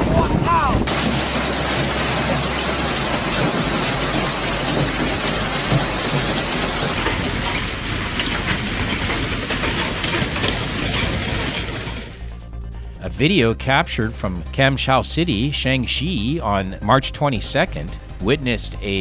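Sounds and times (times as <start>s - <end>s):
heavy rain pouring: 0.0s - 12.3s.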